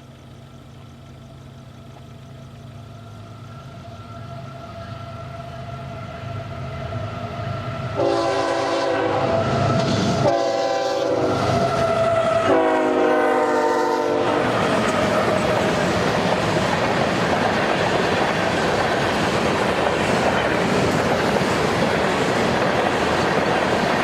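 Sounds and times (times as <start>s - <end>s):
train approaching: 0.0s - 24.0s
train air horn blasts: 3.8s - 15.3s
wheels clattering over rail joints: 14.4s - 24.0s.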